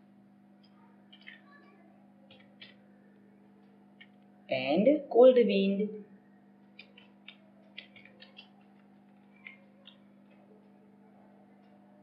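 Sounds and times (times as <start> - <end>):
low steady hum: 0.0 - 12.0
faint irregular clicks: 0.6 - 2.9, 6.6 - 10.8.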